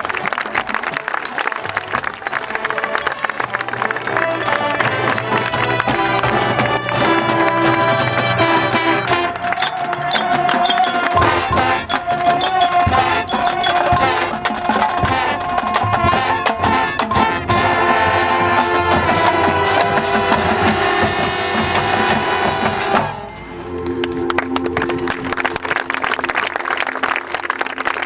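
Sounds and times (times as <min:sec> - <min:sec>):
brass chords: 0:00.8 - 0:25.6
drum hits: 0:04.6 - 0:23.2.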